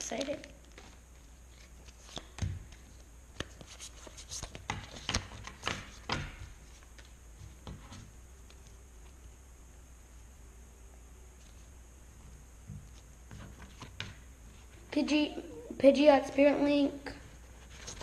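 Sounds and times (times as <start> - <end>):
cards handled with light clicks: 0.0 - 5.9.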